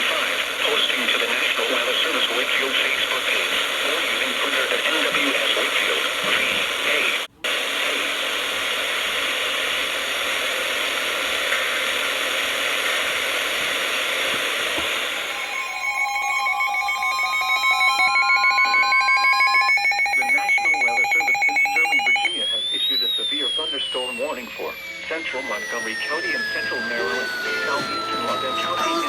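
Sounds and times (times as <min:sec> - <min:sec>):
radio static hiss: 0:00.0 - 0:16.9, 0:19.5 - 0:29.0
rising pulsing electronic beeps: 0:15.3 - 0:29.0.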